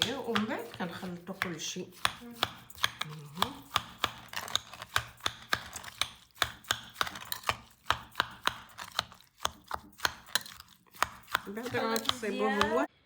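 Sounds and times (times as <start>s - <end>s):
utensil clacking against container: 0.0s - 12.9s.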